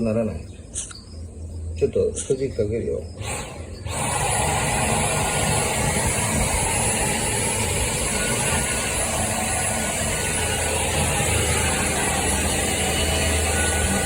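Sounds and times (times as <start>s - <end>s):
vacuum cleaner running: 3.2s - 14.0s.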